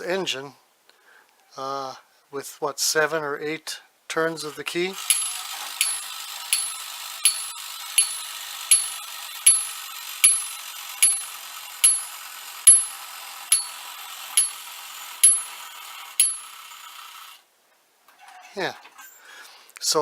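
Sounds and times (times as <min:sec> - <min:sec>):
clockwork motor whir: 0:04.4 - 0:17.5
sharp metallic clicks: 0:04.5 - 0:16.7.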